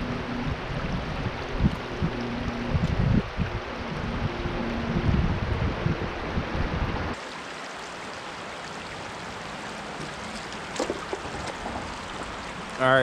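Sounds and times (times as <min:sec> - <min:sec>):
creek water running over rocks: 0:07.1 - 0:13.0.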